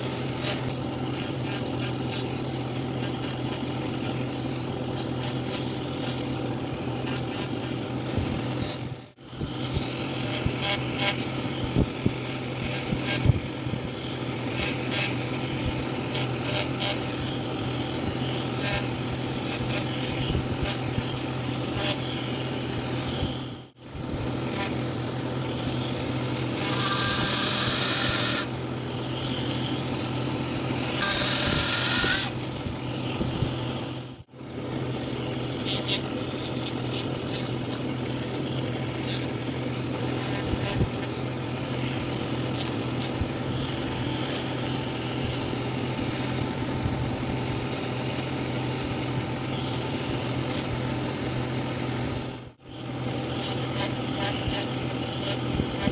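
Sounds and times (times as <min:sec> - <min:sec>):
carving tools rasping wood: 0:00.0 - 0:08.7, 0:09.4 - 0:23.2, 0:24.3 - 0:33.8, 0:35.5 - 0:50.9, 0:53.1 - 0:55.9
hissing grinding: 0:24.2 - 0:34.1.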